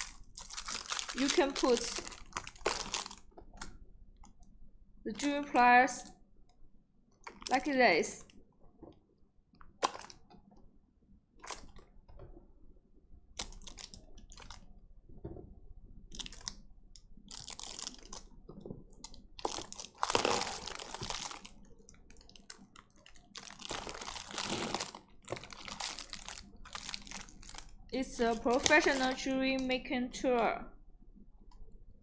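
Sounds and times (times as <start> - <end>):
rustling handling noise: 0.0 - 3.4, 17.3 - 29.8.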